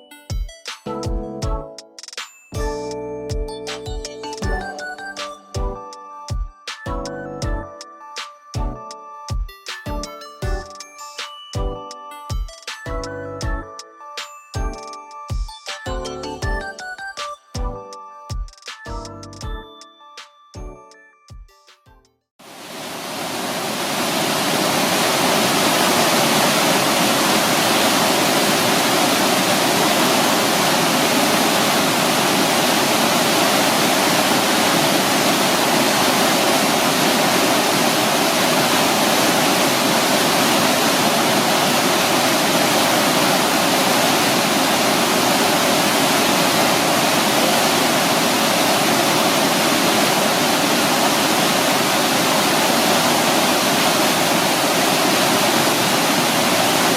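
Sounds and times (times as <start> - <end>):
waterfall rushing: 22.4 - 56.9.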